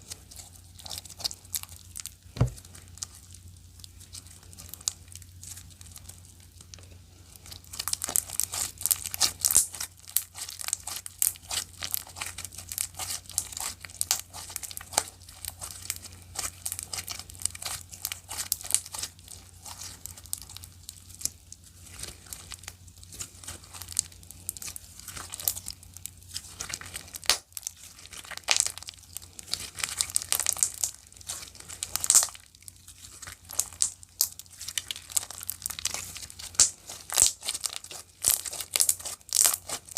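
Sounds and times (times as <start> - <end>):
slime crackling and popping: 0.0 - 39.9.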